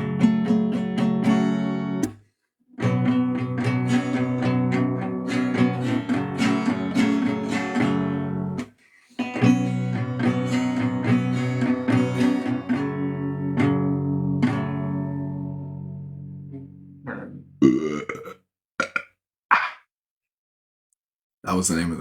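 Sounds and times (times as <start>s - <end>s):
acoustic guitar strumming chords: 0.0s - 2.1s, 2.8s - 8.6s, 9.2s - 17.2s.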